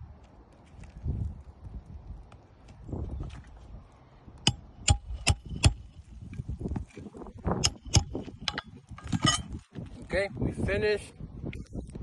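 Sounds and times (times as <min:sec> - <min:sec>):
hammer striking nail: 0:04.5 - 0:05.9, 0:07.6 - 0:08.6.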